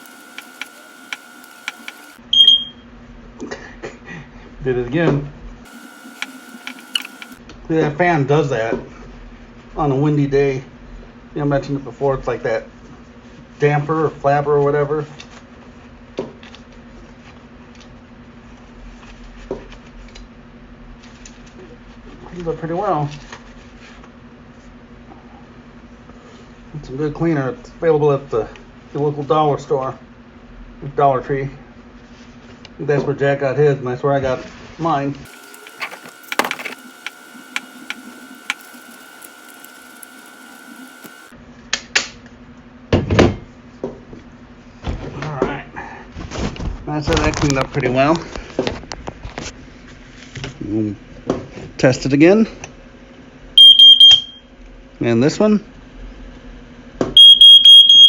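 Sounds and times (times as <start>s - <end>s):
steady low hum: 0.0s - 2.2s, 5.7s - 7.4s, 35.3s - 41.3s.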